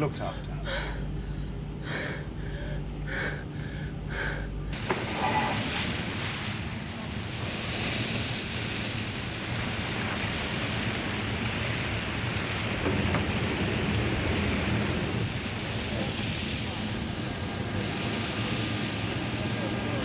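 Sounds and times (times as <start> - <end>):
low hum: 0.0 - 20.0
wind and sea noise: 0.0 - 20.0
breathy gasps: 0.3 - 4.7.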